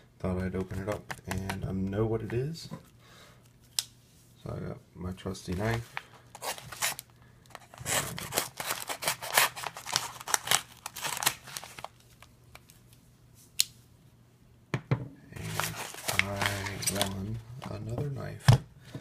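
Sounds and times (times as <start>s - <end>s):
package handling: 5.5s - 12.9s, 15.4s - 17.8s
knife tearing open a package: 6.4s - 12.0s, 15.4s - 17.1s.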